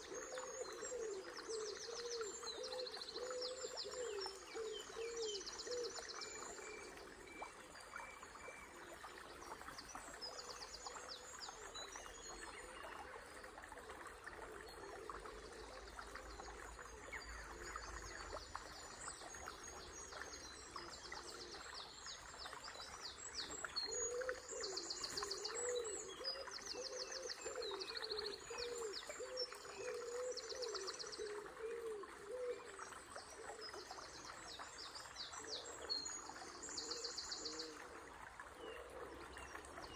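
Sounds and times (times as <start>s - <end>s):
river water running: 0.0s - 39.9s.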